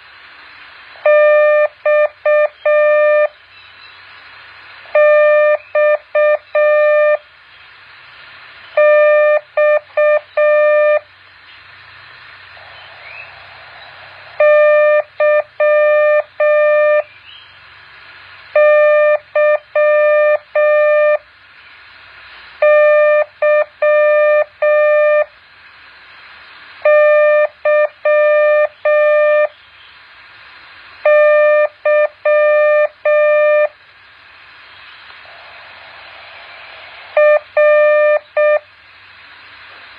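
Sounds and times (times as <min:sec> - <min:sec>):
faint hiss: 0:00.0 - 0:39.9
morse code beeps: 0:01.1 - 0:03.3, 0:05.0 - 0:07.2, 0:08.8 - 0:11.0, 0:14.4 - 0:17.1, 0:31.1 - 0:33.7, 0:37.2 - 0:38.7.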